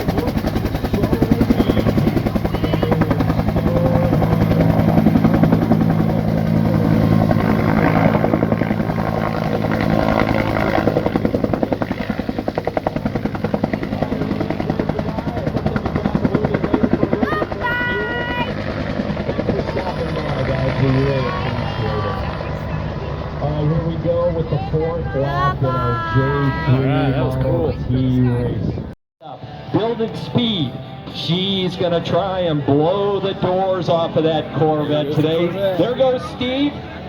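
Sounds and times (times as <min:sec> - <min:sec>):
helicopter engine steady tone: 0:00.0 - 0:28.6, 0:29.4 - 0:37.0
helicopter rotor blades chopping: 0:00.0 - 0:28.9.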